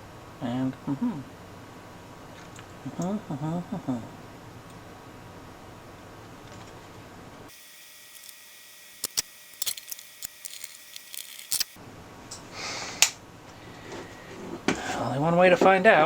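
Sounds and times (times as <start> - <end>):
sharp small clicks and taps: 8.0 - 11.8.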